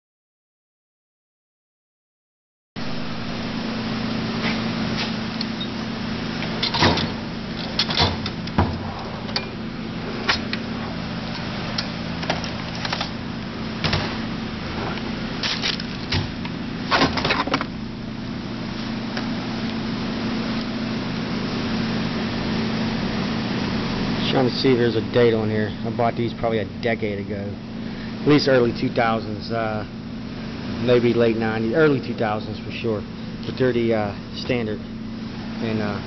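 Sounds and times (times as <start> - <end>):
steady low hum: 2.8 - 36.0.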